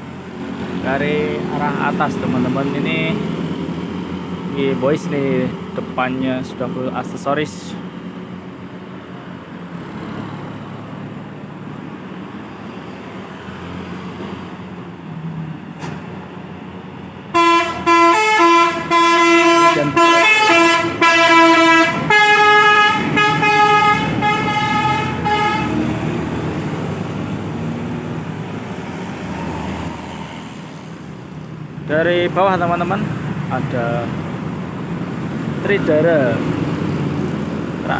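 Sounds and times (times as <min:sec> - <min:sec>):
bus engine running: 0:00.0 - 0:37.9
loud multi-note horn melody: 0:17.3 - 0:26.1.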